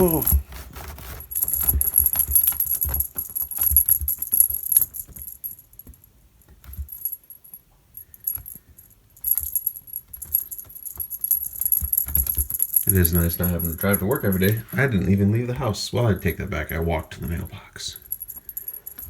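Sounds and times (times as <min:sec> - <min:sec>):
cat toy jangling: 0:00.0 - 0:14.8, 0:18.0 - 0:19.0.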